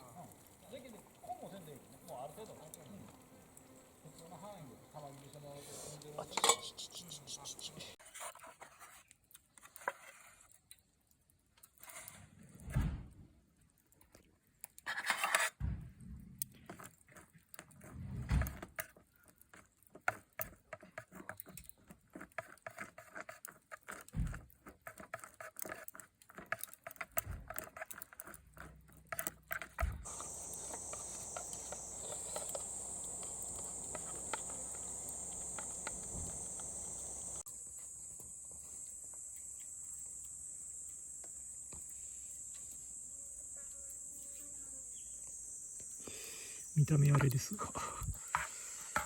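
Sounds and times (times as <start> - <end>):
high-pitched insect buzz: 0.0 - 8.0, 30.0 - 49.0
utensil mashing in a cup: 4.1 - 8.0, 19.6 - 37.4.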